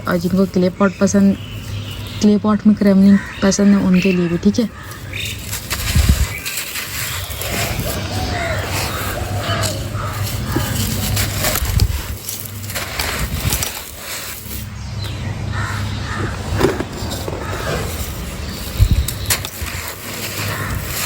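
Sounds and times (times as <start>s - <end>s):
brittle chunks crumbling by hand: 4.8s - 14.7s.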